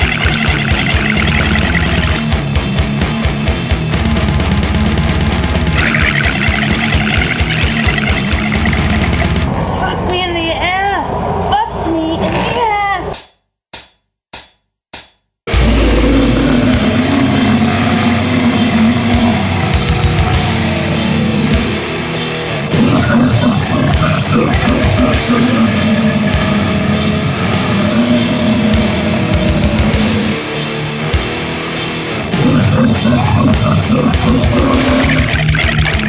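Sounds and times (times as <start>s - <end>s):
heavy metal music: 0.0s - 9.8s, 15.5s - 36.0s.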